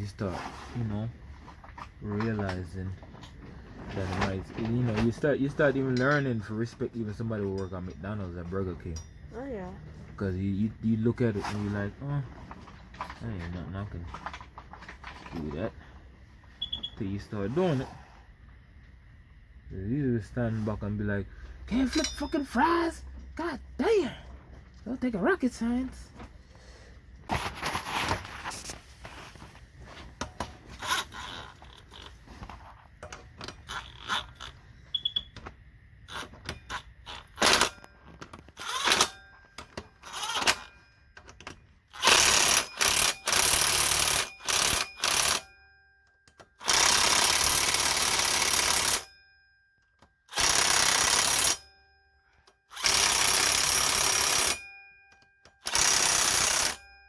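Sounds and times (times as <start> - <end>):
tools clicking and knocking: 30.2 - 49.1.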